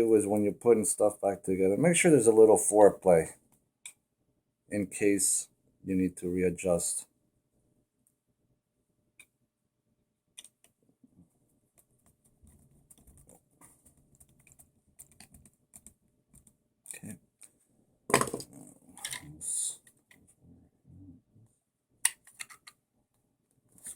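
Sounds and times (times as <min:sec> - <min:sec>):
small parts clicking and tapping: 0:22.0 - 0:22.8.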